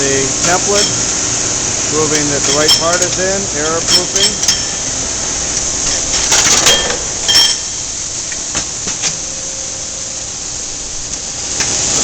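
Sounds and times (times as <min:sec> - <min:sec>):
grinder machine hiss: 0:00.0 - 0:12.0
sharp metallic clanks and clicks: 0:02.4 - 0:04.9, 0:05.8 - 0:07.8.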